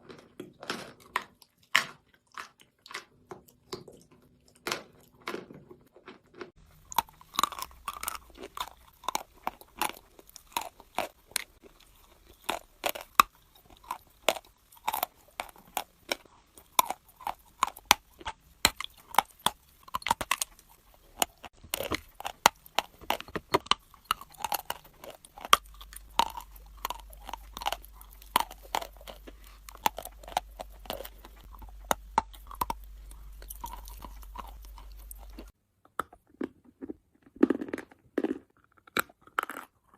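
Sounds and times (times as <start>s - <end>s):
crunching bites and chewing: 0.0s - 39.9s
low steady hum: 6.6s - 35.6s.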